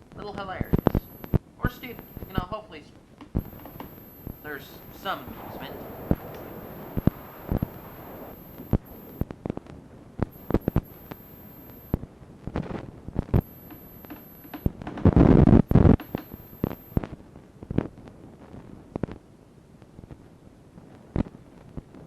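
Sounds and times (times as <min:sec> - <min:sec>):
laptop handling clicks and knocks: 0:03.2 - 0:03.9, 0:13.5 - 0:15.2, 0:15.8 - 0:16.4.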